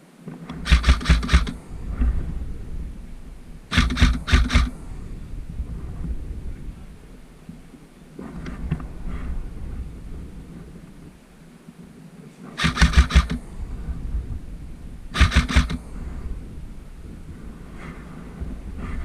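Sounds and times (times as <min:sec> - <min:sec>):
wind rumbling on microphone: 0:00.0 - 0:19.0
airsoft gunfire bursts: 0:00.5 - 0:01.6, 0:03.7 - 0:04.8, 0:12.6 - 0:13.4, 0:15.1 - 0:15.8.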